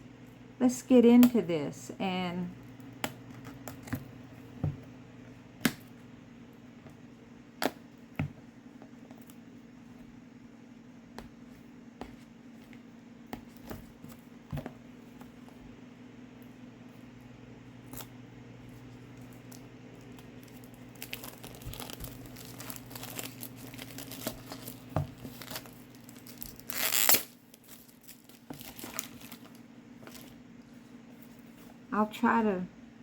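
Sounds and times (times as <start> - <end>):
steady low hum: 0.0 - 33.0
packaging crinkling: 19.1 - 30.4
packaging tearing: 20.0 - 30.3.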